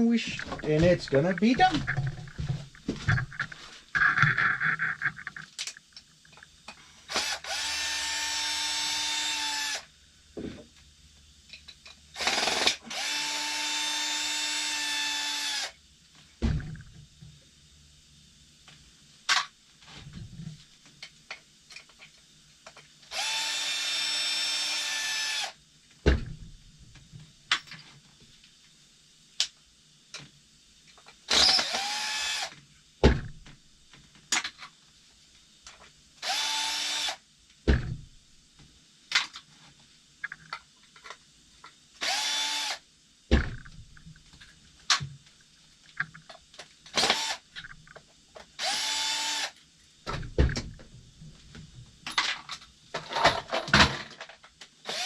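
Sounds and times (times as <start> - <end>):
power drill whining: 7.1 - 9.8, 12.2 - 15.7, 23.1 - 25.5, 31.3 - 32.5, 36.2 - 37.2, 42.0 - 42.8, 47.0 - 47.4, 48.6 - 49.5.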